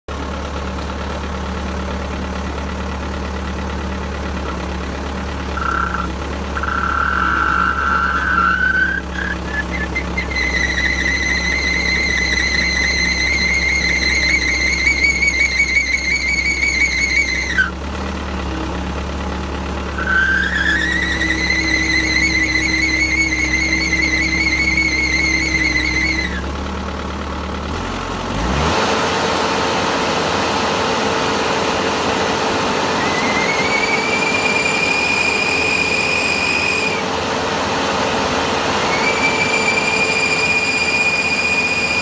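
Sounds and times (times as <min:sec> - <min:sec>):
high-pitched drive motor screech: 0:05.5 - 0:17.8, 0:19.9 - 0:26.5, 0:32.8 - 0:37.1, 0:38.8 - 0:42.0.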